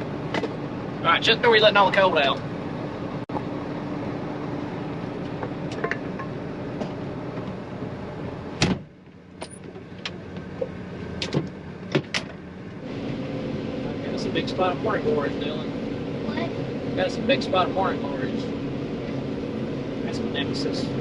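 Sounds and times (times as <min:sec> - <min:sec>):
combine harvester running: 0:00.0 - 0:21.0
cab door shutting with a bang: 0:08.6 - 0:09.6.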